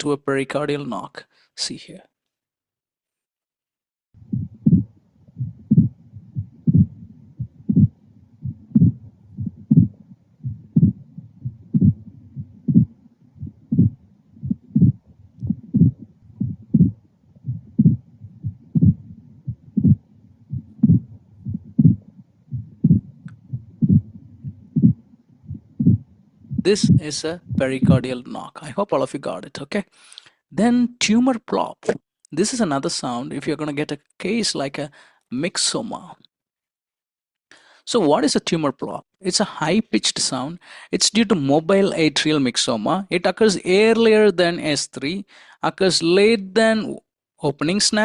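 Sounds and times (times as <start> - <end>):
heartbeat thuds: 4.2 - 28.1.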